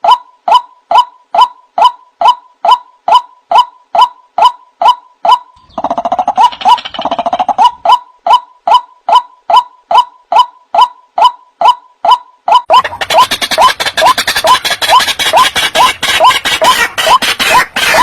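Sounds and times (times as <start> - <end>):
harsh bird chattering: 5.6 - 8.0, 12.6 - 18.0.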